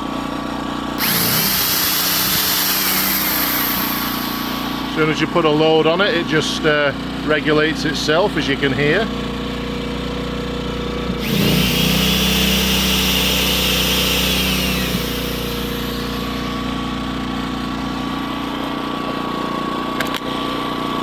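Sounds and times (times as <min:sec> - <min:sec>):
generator running: 0:00.0 - 0:21.0
electric drill whining: 0:01.0 - 0:05.4, 0:11.1 - 0:17.3.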